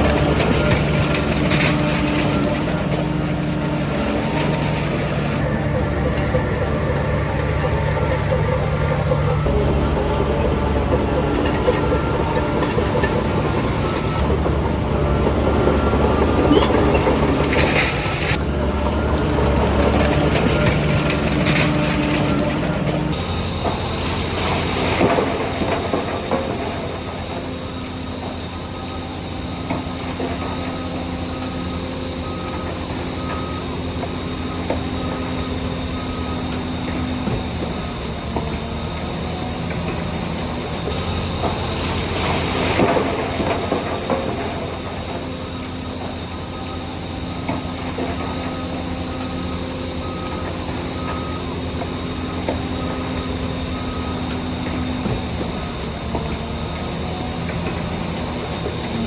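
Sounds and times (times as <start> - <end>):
metallic clatter of tracks: 0.0 - 28.0
bulldozer diesel engine running: 0.0 - 59.0.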